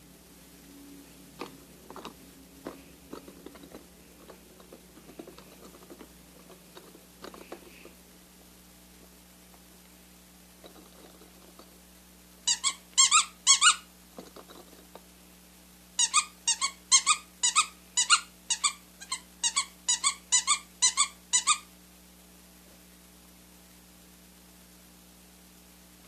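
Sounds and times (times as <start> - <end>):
faint rustling: 1.0 - 9.7
high-pitched squeaks: 12.5 - 13.8.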